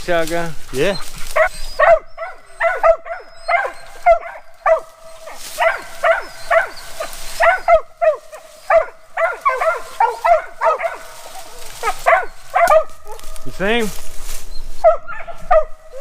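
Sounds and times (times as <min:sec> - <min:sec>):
dogs barking: 0:00.7 - 0:13.6, 0:14.8 - 0:16.0.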